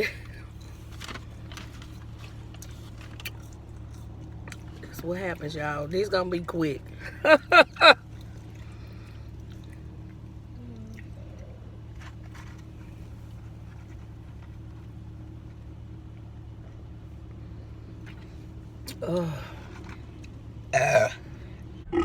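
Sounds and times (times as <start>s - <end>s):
car engine idling: 0.0s - 22.0s
faint clicks and rustles: 0.2s - 4.9s, 8.0s - 18.9s.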